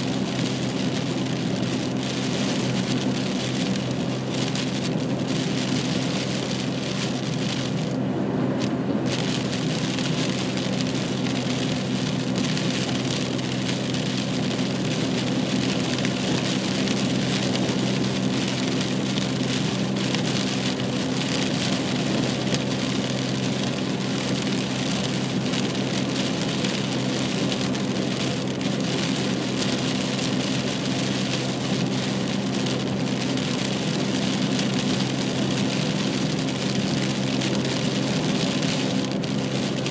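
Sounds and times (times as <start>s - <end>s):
car engine and road drone: 0.0s - 39.9s
rain on car: 0.0s - 39.9s.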